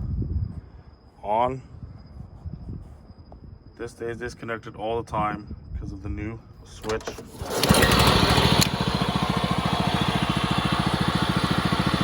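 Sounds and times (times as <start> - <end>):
mower engine starting and running: 6.8 - 12.0.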